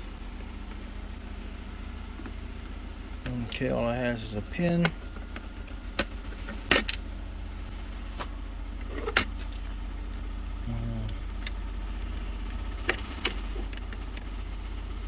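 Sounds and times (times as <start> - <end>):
low hum: 0.0 - 15.0
small parts clicking and tapping: 11.0 - 14.4.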